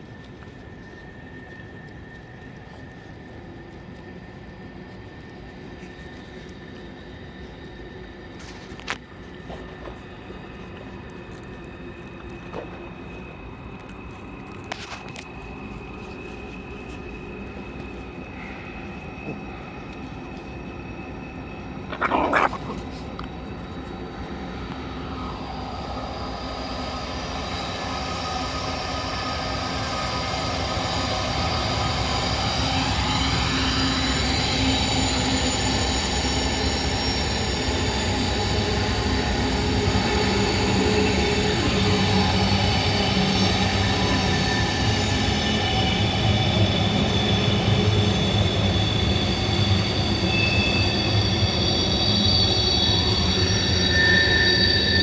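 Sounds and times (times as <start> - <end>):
train rumbling by: 0.0 - 55.0
wheels squealing: 38.9 - 55.0.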